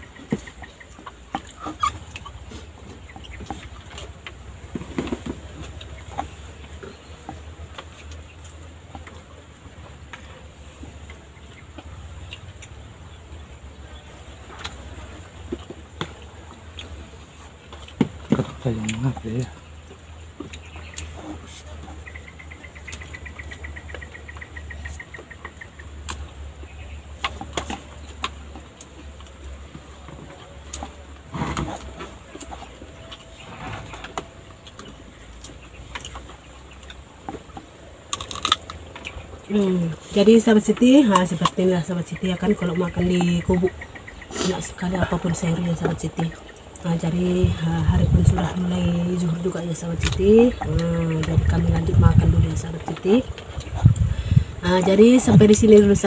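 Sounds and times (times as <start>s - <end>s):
faint chicken clucking: 0.0s - 55.7s
steady low rumble: 37.8s - 56.0s.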